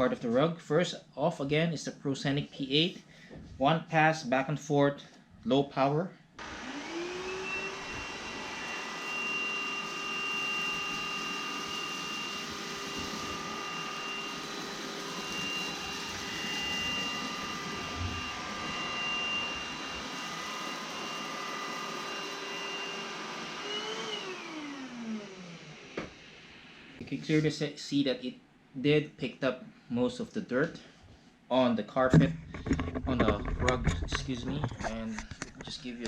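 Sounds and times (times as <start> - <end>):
vacuum cleaner motor whine: 6.4 - 27.0.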